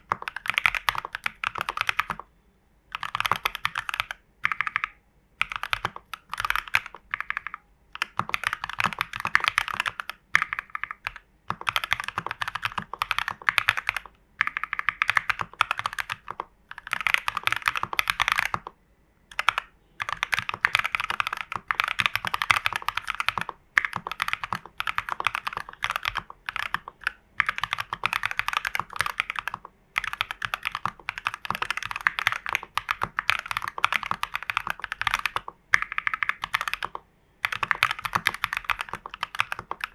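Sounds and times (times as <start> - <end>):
fast mechanical keyboard typing: 0.0 - 2.3, 2.9 - 18.7, 19.3 - 39.9.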